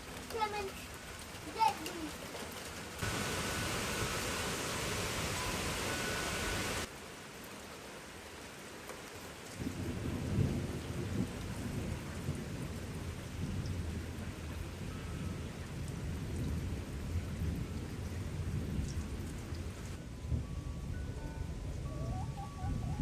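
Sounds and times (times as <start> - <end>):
rain falling: 0.0 - 23.0
low rumble of thunder: 9.6 - 23.0.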